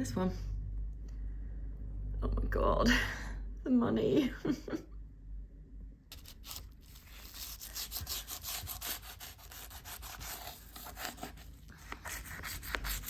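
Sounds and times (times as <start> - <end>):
scrubbing on a hard surface: 6.5 - 13.0.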